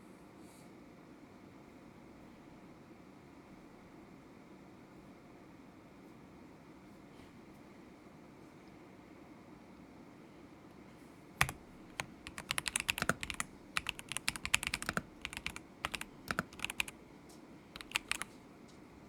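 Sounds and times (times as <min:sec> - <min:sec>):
mechanical keyboard clacking: 0:11.4 - 0:16.9, 0:17.8 - 0:18.3.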